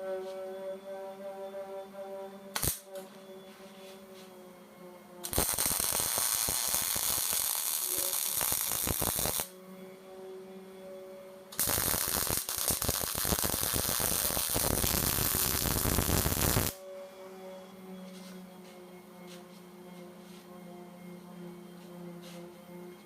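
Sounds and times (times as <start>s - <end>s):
arc welding crackling: 2.6s - 2.9s, 5.2s - 9.5s, 11.6s - 16.8s
welding machine humming: 2.6s - 2.9s, 5.2s - 9.5s, 11.6s - 16.8s.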